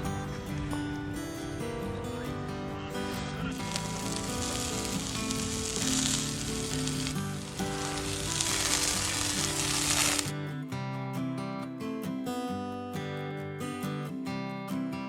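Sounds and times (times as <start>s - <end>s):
background music: 0.0s - 13.0s
food sizzling in a hot pan: 3.6s - 10.3s.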